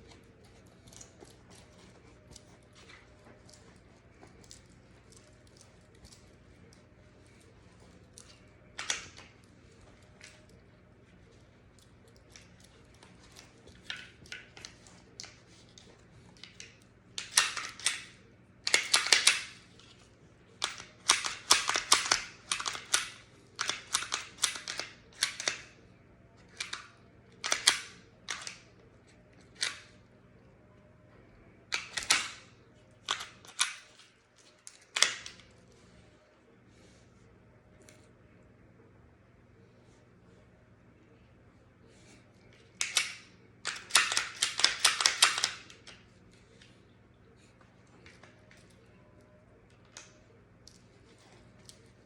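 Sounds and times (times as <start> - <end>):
pistol metallic clicks: 20.6 - 25.7, 27.4 - 28.6, 31.7 - 32.4, 42.8 - 45.7.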